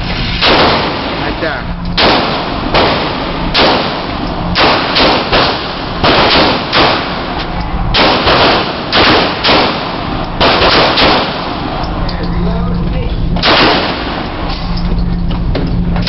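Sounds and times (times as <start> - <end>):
gunshots with echo: 0.4 - 11.7, 13.4 - 14.3.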